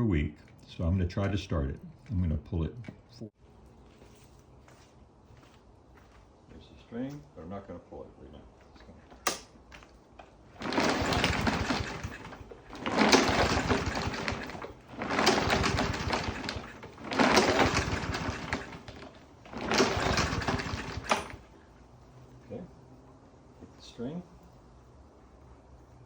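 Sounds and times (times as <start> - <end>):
recoil starter pulls: 9.2 - 21.5
small engine cranking: 10.5 - 21.4.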